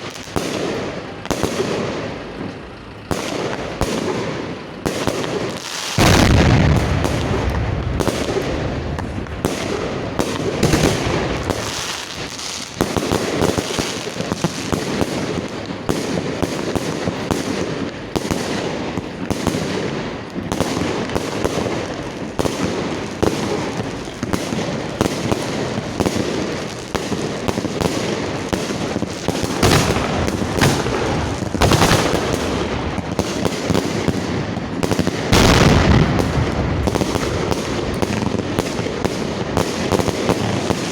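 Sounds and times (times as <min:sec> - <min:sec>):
fireworks launches and bursts: 0:00.0 - 0:40.9
heavy firework bang: 0:06.0 - 0:11.8, 0:29.5 - 0:34.0, 0:35.3 - 0:38.7.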